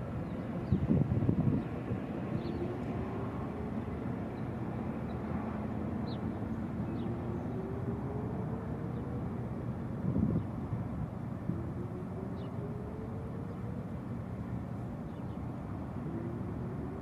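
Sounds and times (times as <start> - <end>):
faint electronic siren wail: 11.3 - 14.8.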